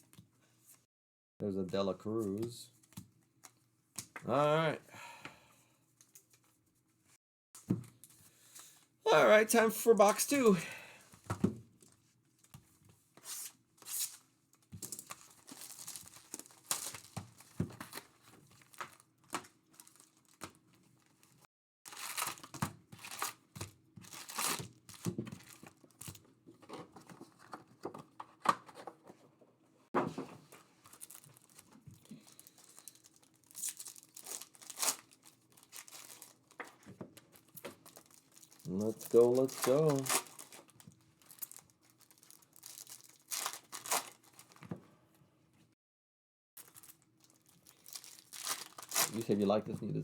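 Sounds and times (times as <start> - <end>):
plastic wrapping tearing and crinkling: 13.3 - 26.2, 30.8 - 44.6, 46.6 - 49.5.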